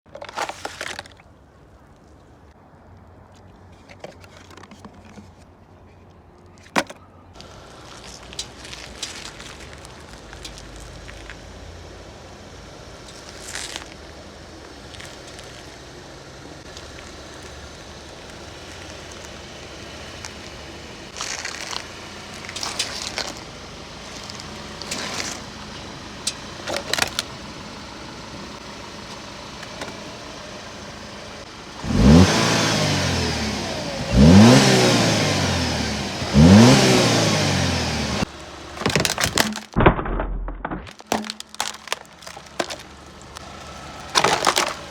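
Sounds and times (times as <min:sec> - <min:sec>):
tyre crunching over objects: 0:00.1 - 0:02.0, 0:06.6 - 0:11.7, 0:13.0 - 0:15.9, 0:16.5 - 0:30.4, 0:36.2 - 0:44.9
car engine revving: 0:09.9 - 0:39.2.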